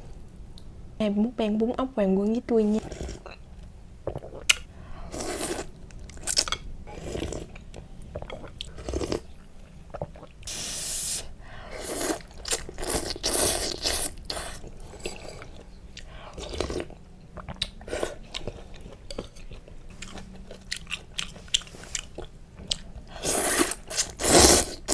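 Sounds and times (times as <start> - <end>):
chewing and crunching: 12.2 - 24.9.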